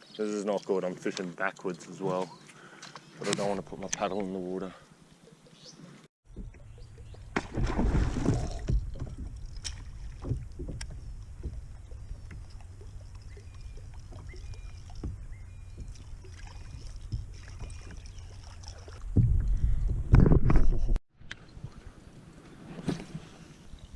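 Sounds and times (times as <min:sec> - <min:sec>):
low rumble of kayak on water: 0:06.2 - 0:20.9
gear knocking against hull: 0:08.4 - 0:13.4.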